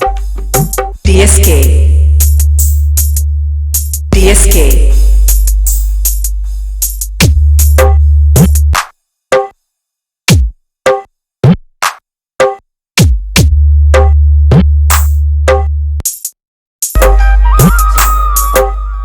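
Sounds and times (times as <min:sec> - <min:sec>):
drum machine kicks: 0:00.0 - 0:01.0, 0:06.9 - 0:09.6, 0:10.3 - 0:18.7
heavy sub-bass: 0:00.0 - 0:08.8, 0:13.0 - 0:16.0, 0:17.0 - 0:19.0.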